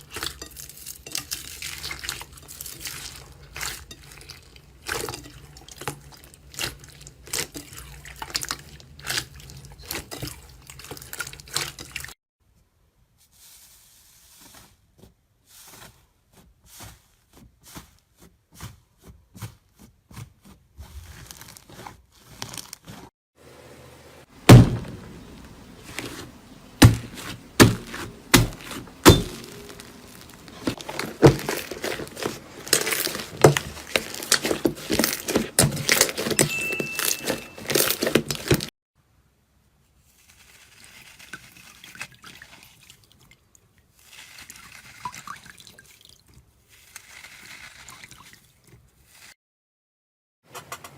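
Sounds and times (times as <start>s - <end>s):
brittle material crunching: 0.0s - 12.1s, 20.2s - 23.1s, 24.5s - 38.7s, 40.1s - 42.9s, 44.0s - 48.5s
loud knocks: 24.5s - 25.2s.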